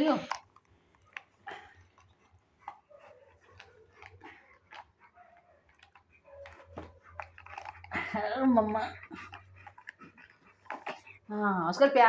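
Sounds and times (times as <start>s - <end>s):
dog vocal noises: 0.0s - 12.0s
small clicks and scuffs: 0.2s - 7.9s.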